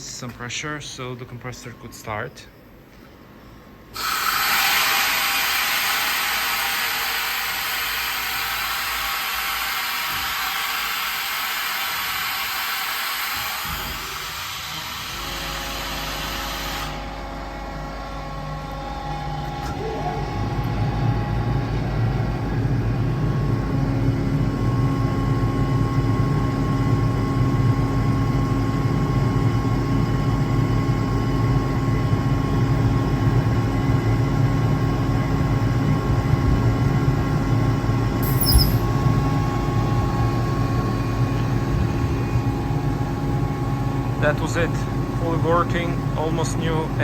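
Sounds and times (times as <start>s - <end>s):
air compressor running: 3.9s - 23.3s, 38.2s - 39.0s.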